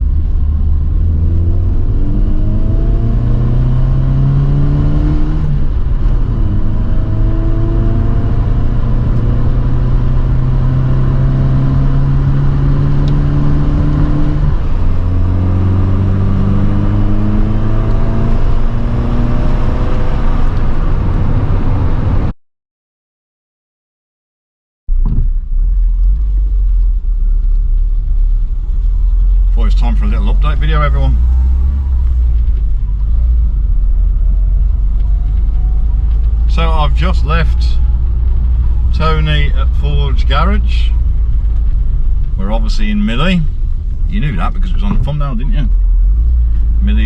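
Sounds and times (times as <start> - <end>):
car engine accelerating through gears: 0.0 - 22.3, 25.0 - 47.0.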